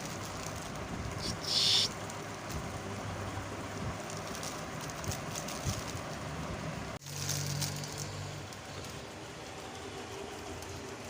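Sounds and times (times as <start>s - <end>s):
kitten meowing: 1.2s - 1.9s.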